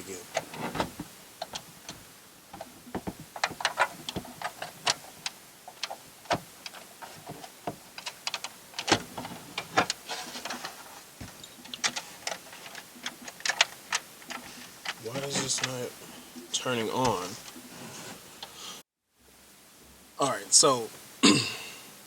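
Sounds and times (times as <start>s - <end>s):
plastic parts clicking: 0.3s - 15.9s.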